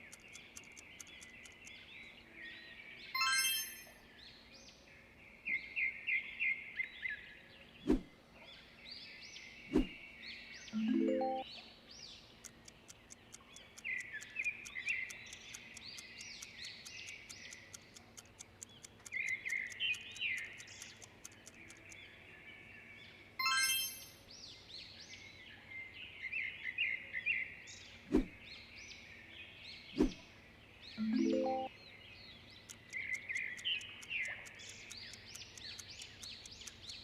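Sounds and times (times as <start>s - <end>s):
sharp clicks: 0.0s - 1.8s, 12.4s - 22.1s, 32.6s - 37.0s
fast faint ticks: 0.0s - 1.9s, 12.3s - 22.1s, 32.6s - 37.0s
small birds chirping: 0.0s - 37.0s.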